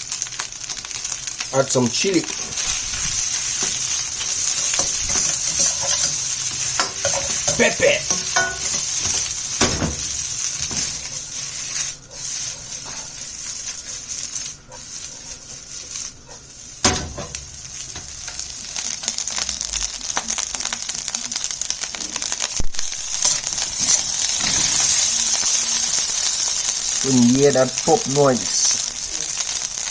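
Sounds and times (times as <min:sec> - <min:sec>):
rice sizzling in a hot pan: 0:00.0 - 0:29.9
spatula knocking on pan: 0:04.8 - 0:10.1.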